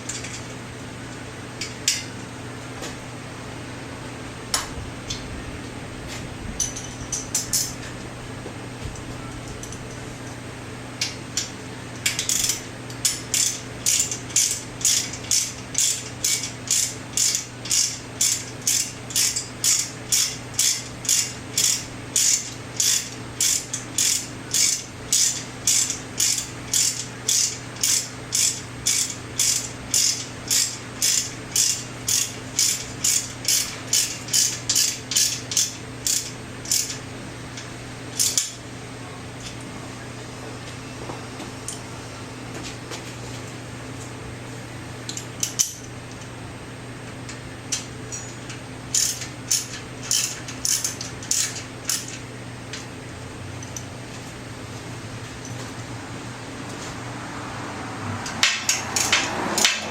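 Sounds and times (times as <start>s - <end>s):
ratchet wrench pawl rasping: 12.0s - 37.0s, 38.2s - 38.6s, 48.9s - 52.2s, 58.2s - 59.9s.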